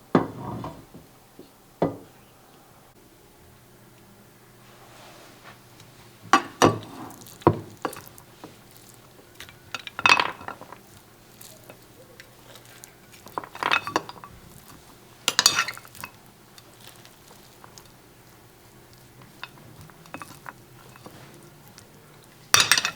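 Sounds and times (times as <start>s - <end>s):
cutlery clinking against dishes: 9.3s - 17.9s, 18.9s - 22.9s.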